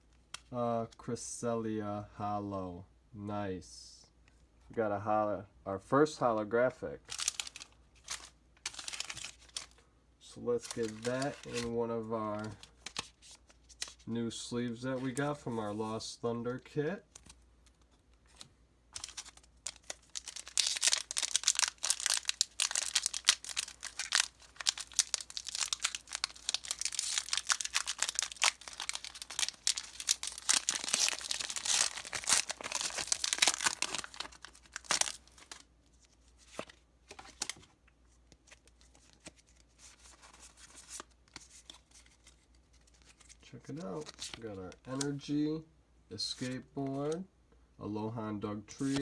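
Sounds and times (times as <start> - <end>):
plastic packaging crinkling and tearing: 7.1 - 9.8, 10.6 - 14.0, 17.2 - 37.7, 38.3 - 45.2.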